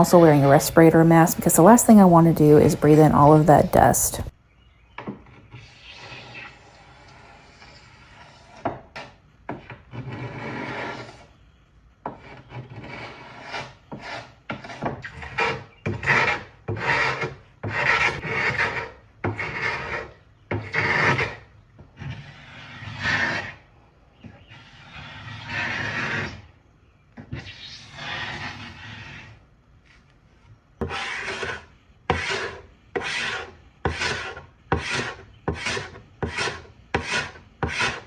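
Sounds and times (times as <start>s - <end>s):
hand scraper scraping wood: 5.1s - 11.3s, 12.1s - 26.5s, 27.2s - 29.4s, 30.8s - 38.0s.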